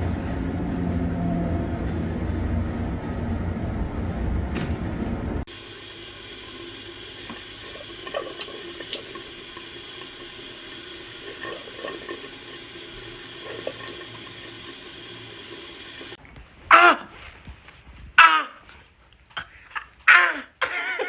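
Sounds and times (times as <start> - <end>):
running water: 5.5 - 16.2.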